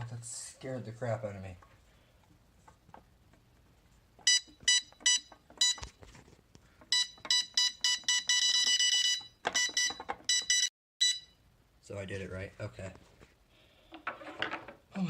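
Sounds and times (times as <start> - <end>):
keypad beeps: 4.2 - 5.9, 6.9 - 11.4.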